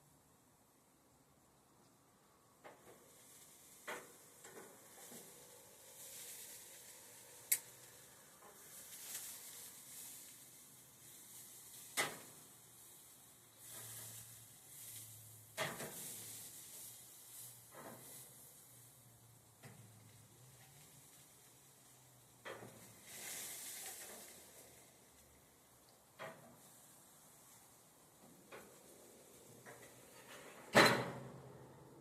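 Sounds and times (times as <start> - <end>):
chicken sizzling on a grill: 2.6 - 32.0.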